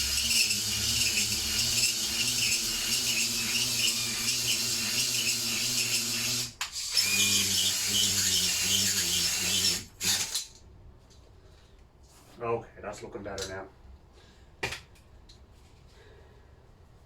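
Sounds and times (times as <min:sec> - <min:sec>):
drill motor hum: 0:00.0 - 0:10.4.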